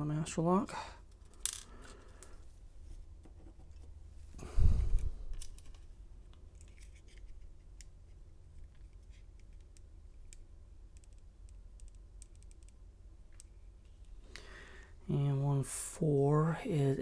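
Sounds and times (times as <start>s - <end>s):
small metal clicks and scratches: 5.3s - 13.6s.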